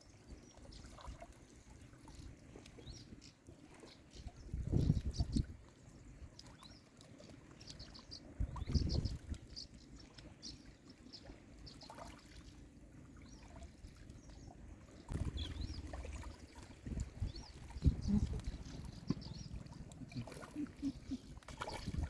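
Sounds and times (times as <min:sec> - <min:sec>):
small birds chirping: 0:02.7 - 0:12.3, 0:13.2 - 0:22.0
faint low rumble: 0:15.1 - 0:22.0.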